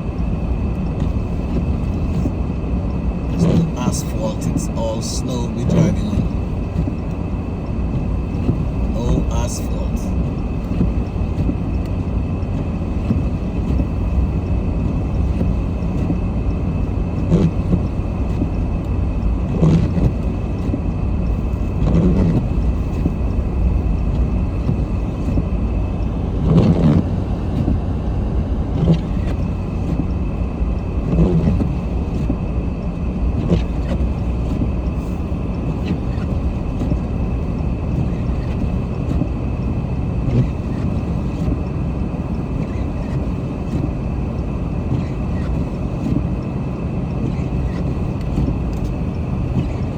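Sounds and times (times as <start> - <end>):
car engine and tyre rumble: 0.0 - 49.9.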